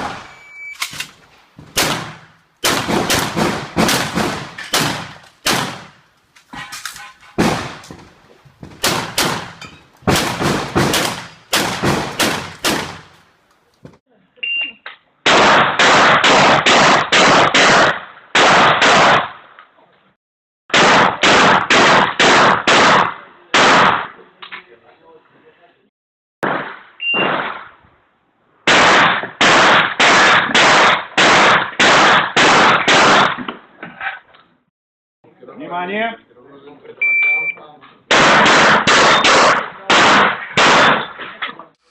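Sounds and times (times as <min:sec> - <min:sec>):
shotgun shots: 0:00.0 - 0:13.2, 0:15.2 - 0:19.5, 0:20.7 - 0:24.2, 0:26.4 - 0:27.8, 0:28.6 - 0:33.5, 0:38.1 - 0:41.4.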